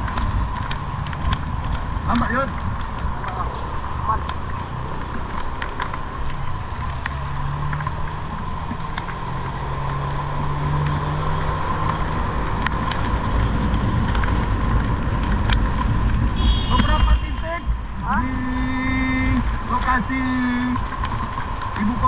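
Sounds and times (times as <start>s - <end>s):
car engine and road rumble: 0.0s - 22.0s.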